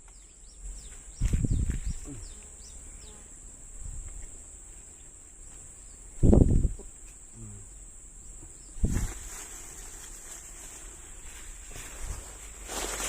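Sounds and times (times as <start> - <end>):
dull low thumps: 0.8 - 2.3, 6.2 - 7.6.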